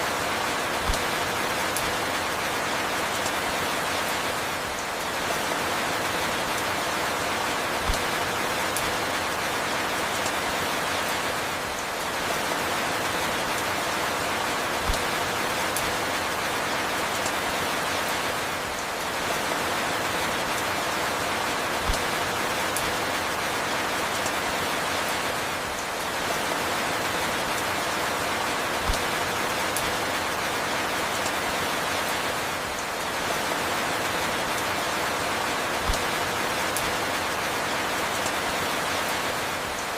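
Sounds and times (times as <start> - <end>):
steady falling rain: 0.0 - 39.9.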